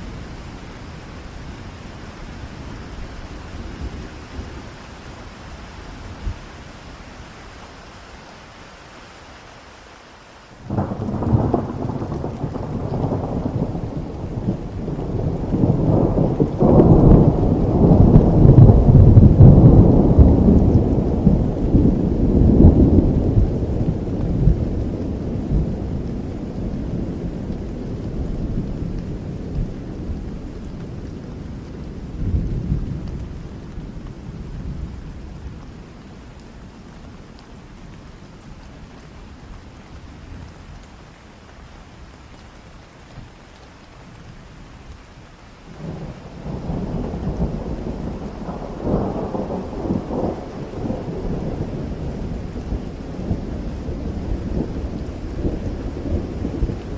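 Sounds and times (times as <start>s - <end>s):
steady rain falling: 0.0s - 56.9s
rolling thunder: 10.6s - 35.6s, 45.8s - 56.9s.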